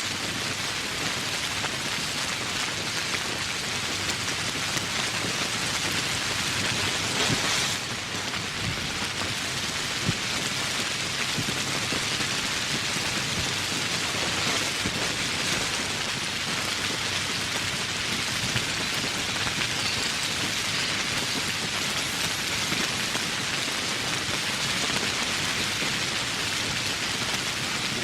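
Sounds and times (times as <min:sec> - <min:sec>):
rain falling: 0:00.0 - 0:28.0
raindrops ticking close by: 0:00.0 - 0:28.0.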